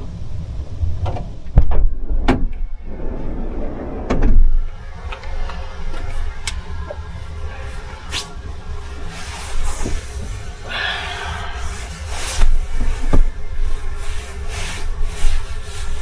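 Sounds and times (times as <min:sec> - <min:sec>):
strong wind buffeting: 0:01.6 - 0:04.9.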